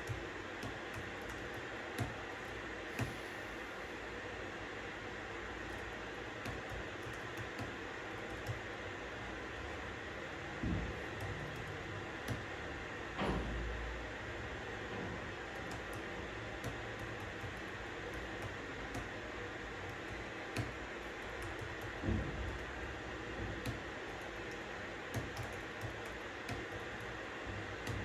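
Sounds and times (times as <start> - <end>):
keyboard key clicks: 0.0 - 3.3, 5.6 - 8.6, 15.5 - 19.1, 19.8 - 22.7, 23.6 - 27.2
steady white noise hiss: 0.0 - 28.0.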